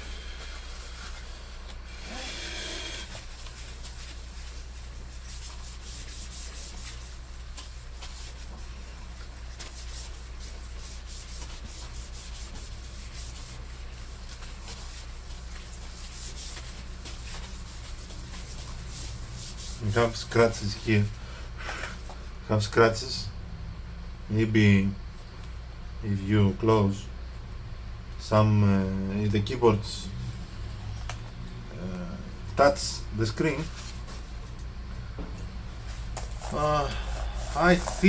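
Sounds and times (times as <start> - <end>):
low steady hum: 0.0 - 38.0
scrubbing on a laptop keyboard: 3.0 - 21.2, 35.8 - 38.0.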